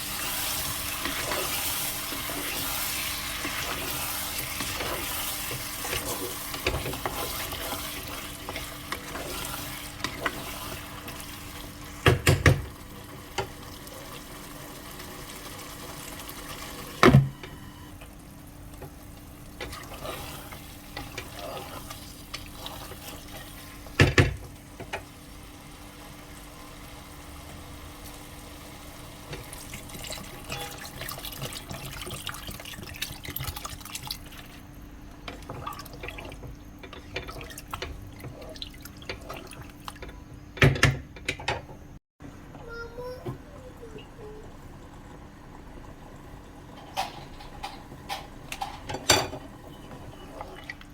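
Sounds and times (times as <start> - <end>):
curry sizzling: 0.0 - 17.3, 18.0 - 40.1
stirring pot: 0.1 - 12.2, 19.6 - 24.0.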